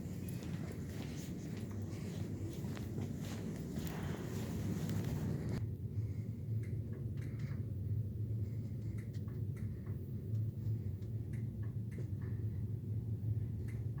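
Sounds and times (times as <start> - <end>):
vehicle rumbling: 0.0 - 5.6
light ticks: 8.9 - 12.4, 13.6 - 13.9.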